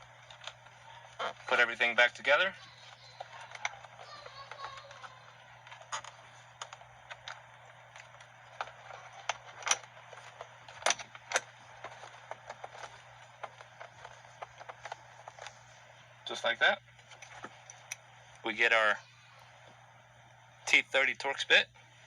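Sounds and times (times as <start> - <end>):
plastic parts clicking and knocking: 2.8 - 15.7.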